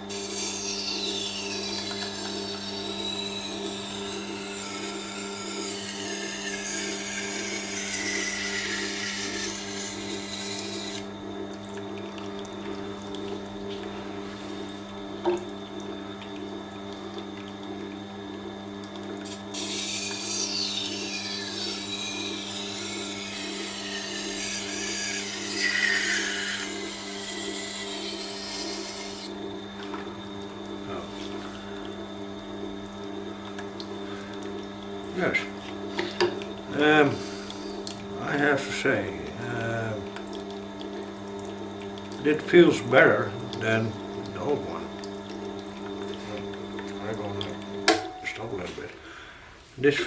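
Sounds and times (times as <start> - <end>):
sharpener motor hum: 0.0 - 11.3, 19.2 - 40.5
knife grinding on wet stone: 0.6 - 11.0, 19.2 - 29.4.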